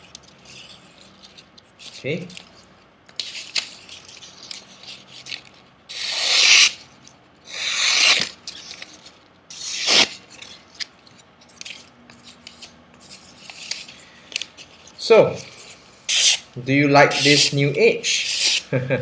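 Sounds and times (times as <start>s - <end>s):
knife edge hissing strokes: 15.6s - 16.4s, 17.1s - 18.7s.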